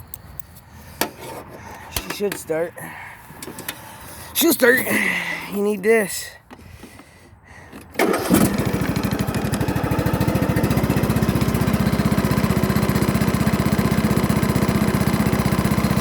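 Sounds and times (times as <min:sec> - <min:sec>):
small engine running: 0:08.0 - 0:16.0.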